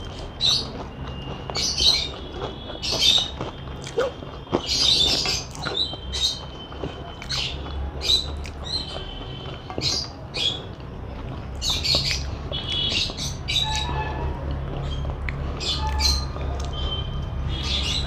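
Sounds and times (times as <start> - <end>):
wet chewing and lip smacks: 0.0 - 9.9.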